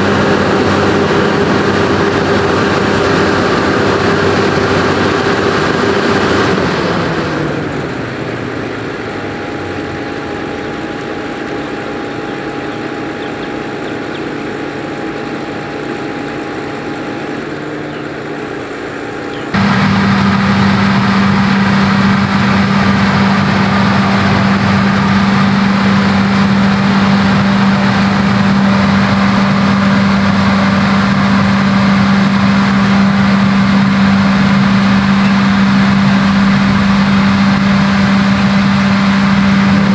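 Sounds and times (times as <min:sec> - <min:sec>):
heavy machinery engines running: 0:00.0 - 0:39.9
steady whine: 0:00.0 - 0:39.9.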